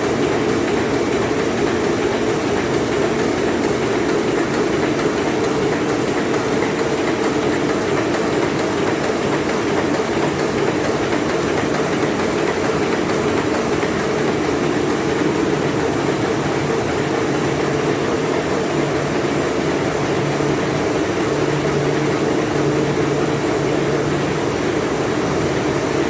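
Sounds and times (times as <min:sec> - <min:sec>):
mechanical running noise: 0:00.0 - 0:26.0.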